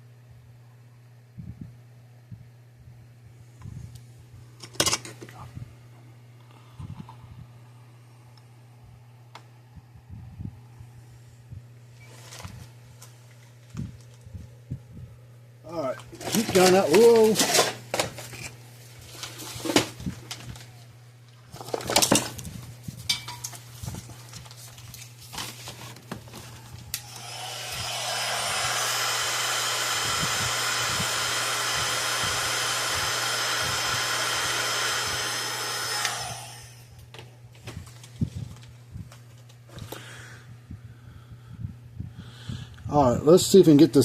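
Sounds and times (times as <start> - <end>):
heat gun blower running: 15.7 - 20.7, 26.1 - 37.9.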